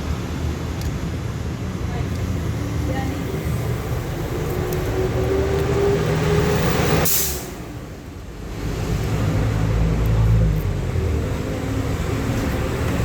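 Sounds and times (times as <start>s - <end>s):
vehicle engine rumble: 0.0s - 13.0s
short hiss of air: 7.0s - 7.6s.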